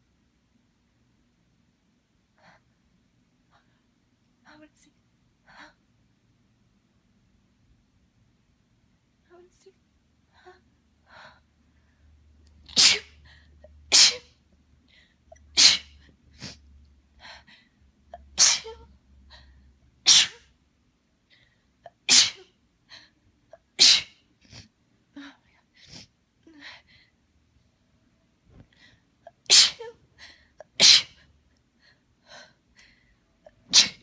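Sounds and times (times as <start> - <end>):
person sneezing: 12.7 - 13.2, 13.9 - 14.3, 15.6 - 16.6, 18.4 - 18.8, 20.1 - 20.4, 22.0 - 22.5, 23.8 - 24.6, 29.4 - 29.9, 30.6 - 31.2, 33.6 - 34.0.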